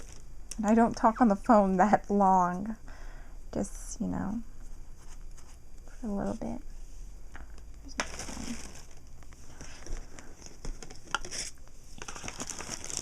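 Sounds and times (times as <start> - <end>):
packaging crinkling: 0.0 - 0.3, 7.9 - 13.0.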